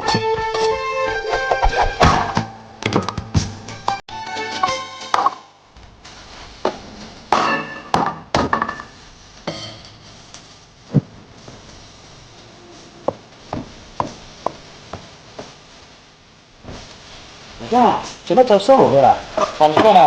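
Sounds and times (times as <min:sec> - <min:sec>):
knife chopping on cutting board: 0:13.5 - 0:15.1.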